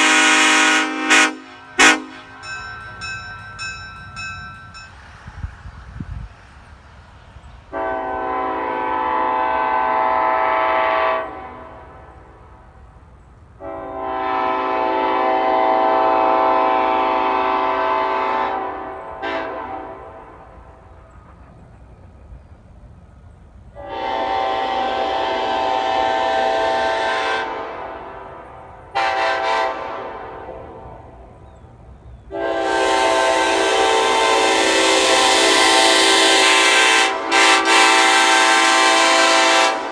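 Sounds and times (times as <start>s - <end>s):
air horn chord blasts: 0.0s - 2.4s, 32.3s - 39.9s.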